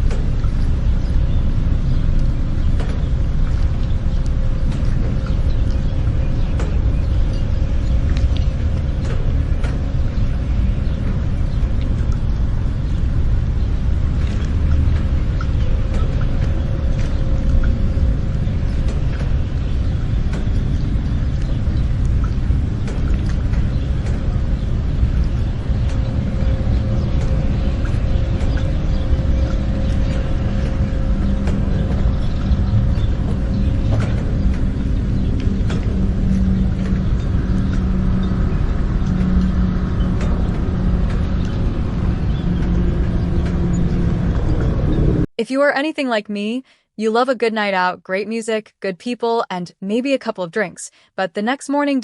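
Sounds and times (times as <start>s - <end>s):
steady low rumble: 0.0s - 46.7s
constant hum: 0.0s - 52.0s
small scattered clicks: 2.1s - 10.2s.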